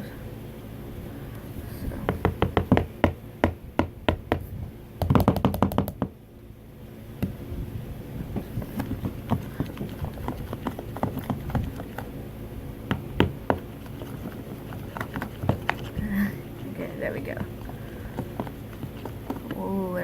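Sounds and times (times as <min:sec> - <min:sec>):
hands tapping and knocking: 0:02.0 - 0:04.4, 0:05.0 - 0:06.2, 0:08.3 - 0:12.1, 0:12.9 - 0:16.1, 0:17.3 - 0:19.8.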